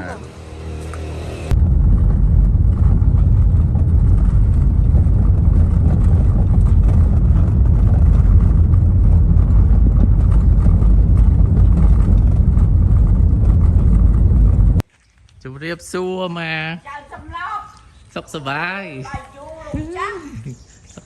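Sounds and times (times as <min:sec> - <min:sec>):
loud low rumble: 0:00.0 - 0:14.8.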